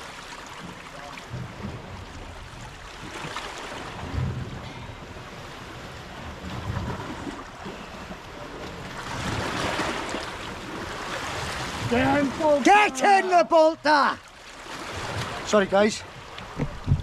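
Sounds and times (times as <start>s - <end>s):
small waves washing on shore: 0.0s - 17.0s
wind buffeting microphone: 16.1s - 17.0s.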